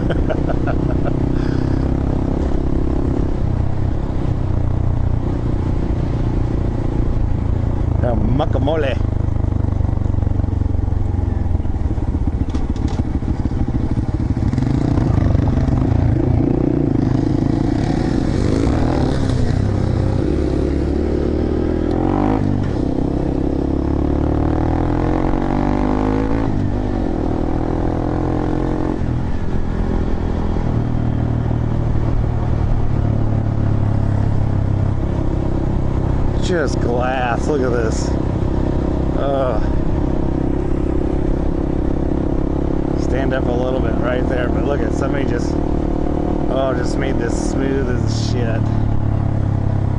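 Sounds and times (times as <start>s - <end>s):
motorcycle engine revving: 0.0s - 49.9s
motorcycle clattering over trail: 12.0s - 15.9s.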